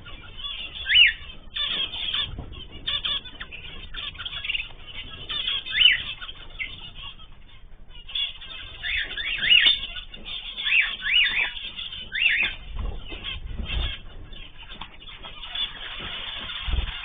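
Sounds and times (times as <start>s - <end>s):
cage birds chirping: 0.0s - 17.0s.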